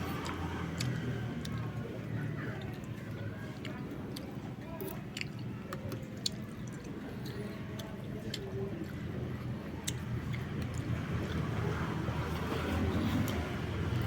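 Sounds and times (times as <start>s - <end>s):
person chewing: 0.1s - 1.8s, 2.6s - 9.0s, 9.8s - 11.6s.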